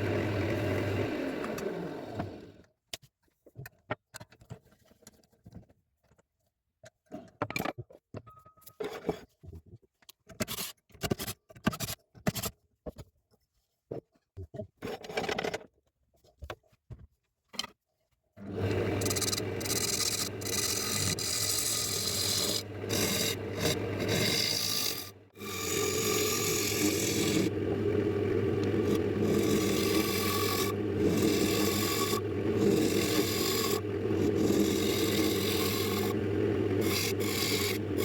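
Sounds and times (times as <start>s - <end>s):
power tool rasping on wood: 18.4s - 38.0s.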